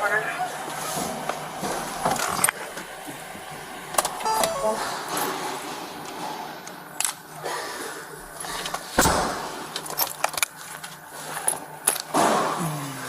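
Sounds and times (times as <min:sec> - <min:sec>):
short sound falling in pitch: 0:04.3 - 0:05.2.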